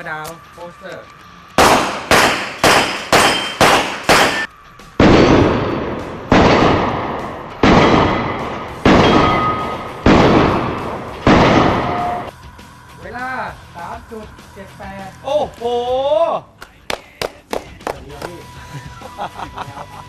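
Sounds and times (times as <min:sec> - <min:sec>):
handgun shots: 0:01.6 - 0:05.5.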